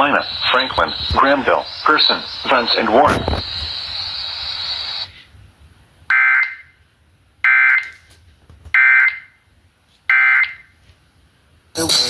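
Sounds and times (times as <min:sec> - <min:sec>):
buzzy two-tone data bursts: 0:00.0 - 0:05.1
radio hiss: 0:00.0 - 0:05.3.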